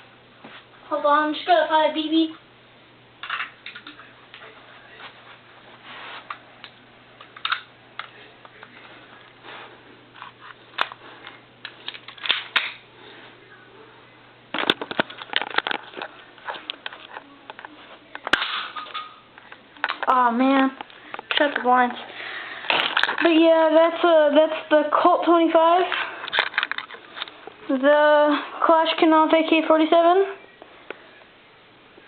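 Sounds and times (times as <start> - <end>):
faint steady hum: 0.0 - 32.0
clicks and rustling: 14.5 - 20.1, 25.9 - 27.6.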